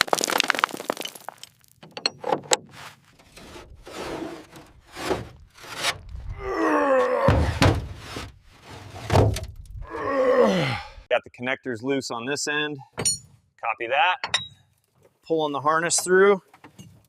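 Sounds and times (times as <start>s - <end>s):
creaking metal scrape: 2.0s - 6.2s, 7.6s - 9.5s
heavy thud: 7.3s - 8.0s.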